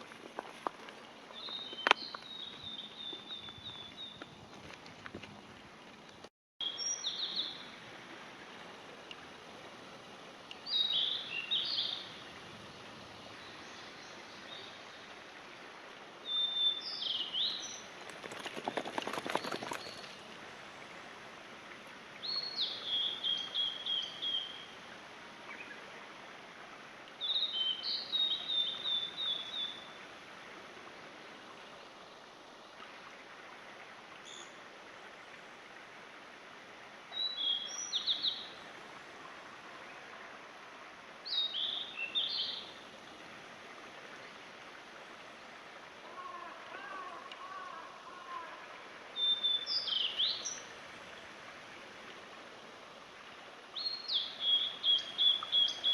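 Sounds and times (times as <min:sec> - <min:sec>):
songbird singing: 0:01.3 - 0:04.4, 0:06.0 - 0:07.8, 0:10.5 - 0:12.2, 0:16.2 - 0:20.2, 0:22.2 - 0:24.7, 0:27.2 - 0:30.0, 0:37.1 - 0:38.6, 0:41.2 - 0:42.8, 0:49.2 - 0:50.8, 0:53.8 - 0:55.9.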